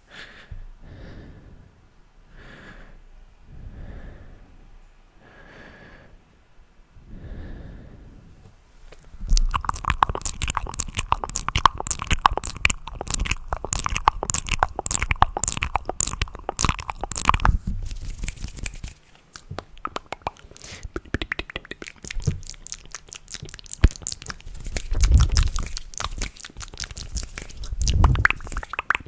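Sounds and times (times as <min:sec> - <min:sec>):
soft breaths: 0:00.0 - 0:09.3, 0:20.4 - 0:21.0
fast crackling clicks: 0:09.3 - 0:29.0.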